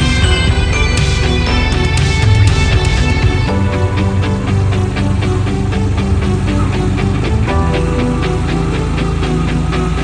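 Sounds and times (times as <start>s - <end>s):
drums with steady beat: 0.0s - 3.9s
bass: 0.0s - 10.0s.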